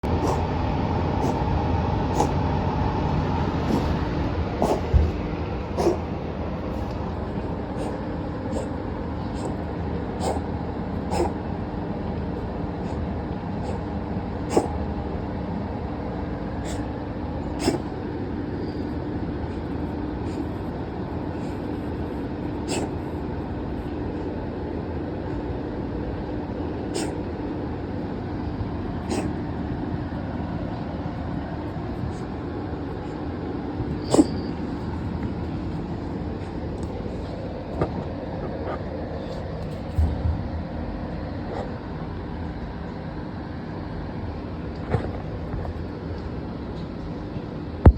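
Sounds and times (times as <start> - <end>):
background rumble with hum: 0.0 - 47.9
cat sneezing hacks: 0.2 - 0.5, 1.2 - 1.5, 2.1 - 2.4, 3.6 - 6.1, 7.7 - 11.5, 12.8 - 14.8, 16.6 - 18.0, 20.2 - 20.6, 22.4 - 23.2, 26.8 - 27.3, 29.0 - 29.4, 33.9 - 34.8.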